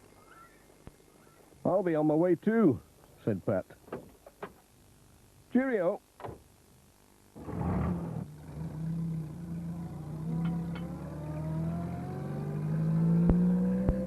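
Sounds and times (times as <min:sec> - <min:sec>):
van engine accelerating: 0:07.4 - 0:14.0.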